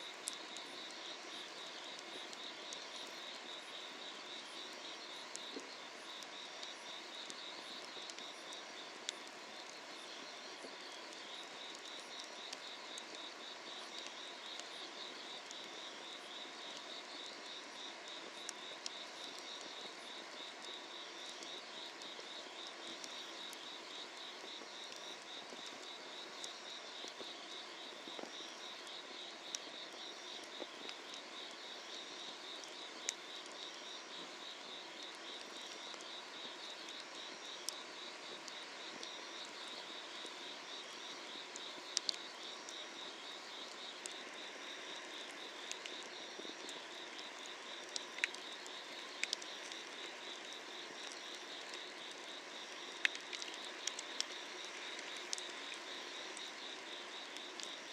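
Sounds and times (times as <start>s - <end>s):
insects trilling: 0.0s - 57.9s
firewood crackling: 40.9s - 42.8s, 43.4s - 57.9s.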